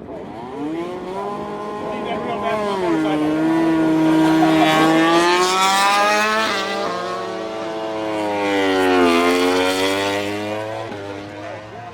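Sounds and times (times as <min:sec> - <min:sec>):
racing motorcycle engine revving: 0:00.0 - 0:11.9.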